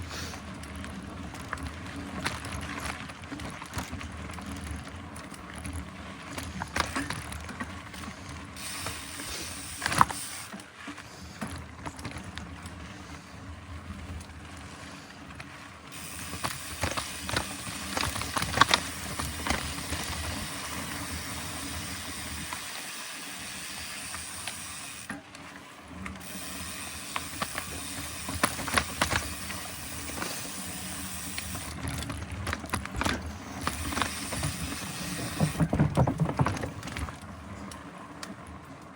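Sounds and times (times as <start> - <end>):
bike rattling over bumps: 0.0 - 38.9
mountain bike rolling on trail: 0.0 - 38.9
bicycle freehub ratchet ticking: 8.6 - 10.6, 15.9 - 25.1, 26.1 - 31.8, 33.6 - 35.6.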